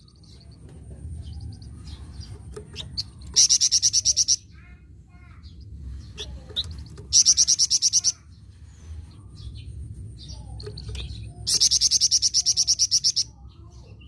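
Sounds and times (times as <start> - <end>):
soft bird chirps: 0.0 - 14.0
songbird rattling trill: 1.3 - 4.5, 6.0 - 8.2, 10.2 - 13.3.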